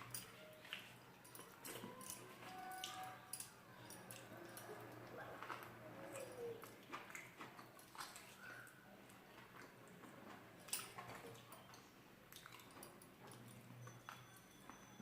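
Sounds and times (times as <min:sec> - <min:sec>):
small wet clicks: 0:02.8 - 0:14.2
person chewing: 0:12.3 - 0:12.8.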